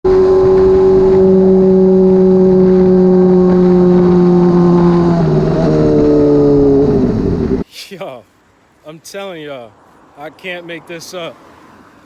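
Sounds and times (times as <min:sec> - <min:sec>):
motorcycle engine running: 0:00.1 - 0:07.6.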